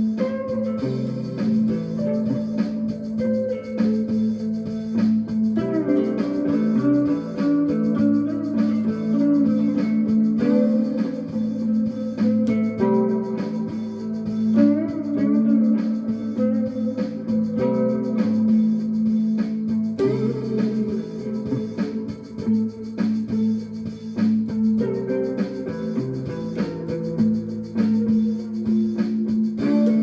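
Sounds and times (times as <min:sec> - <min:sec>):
plucked fretless string instrument: 0:00.0 - 0:30.0.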